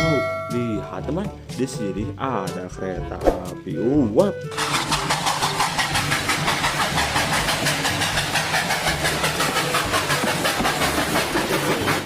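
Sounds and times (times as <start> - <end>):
steam locomotive chuffing: 4.5 - 12.0.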